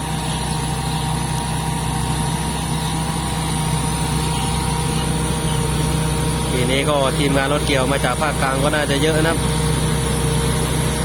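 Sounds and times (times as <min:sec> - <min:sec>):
diesel engine humming: 0:00.0 - 0:11.0
machinery high tones: 0:00.0 - 0:11.0.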